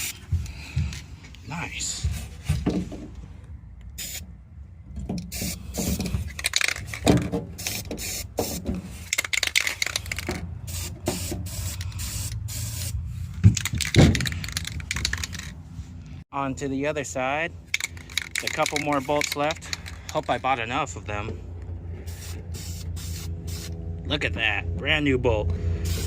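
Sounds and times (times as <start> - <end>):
tools clicking and scraping on metal: 17.7 - 20.4.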